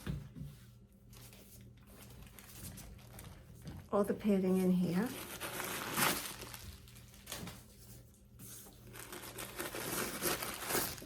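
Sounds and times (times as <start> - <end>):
packing padding rustling: 1.8 - 4.0, 4.9 - 7.7, 8.8 - 11.0.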